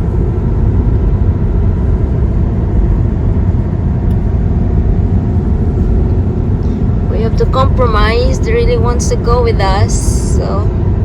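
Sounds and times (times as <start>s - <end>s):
road and tyre rumble: 0.0s - 11.0s.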